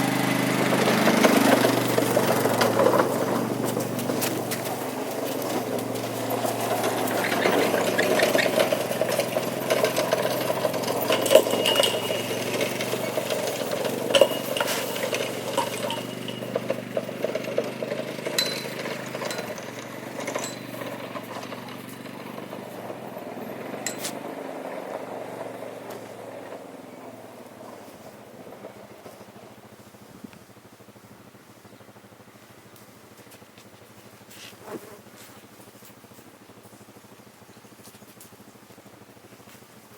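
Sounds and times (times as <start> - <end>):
knocks and clatter: 0.0 - 26.8
vehicle engine running: 0.0 - 39.9.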